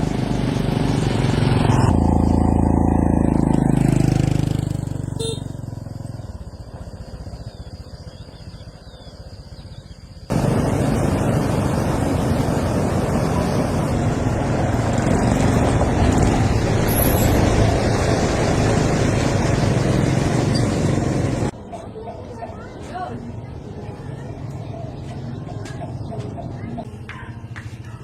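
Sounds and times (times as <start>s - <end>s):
road and wind noise: 0.0s - 28.0s
low engine rumble: 10.3s - 21.6s.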